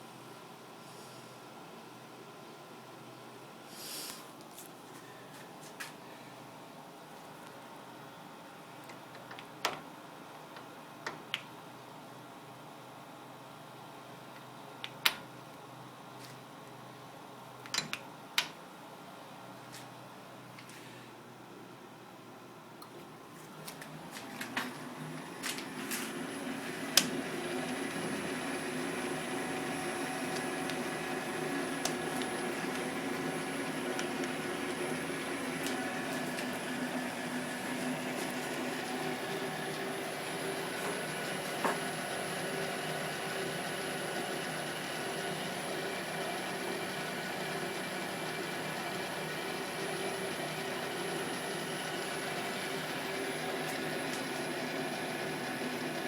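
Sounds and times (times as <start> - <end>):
metal lathe running: 24.8 - 56.0.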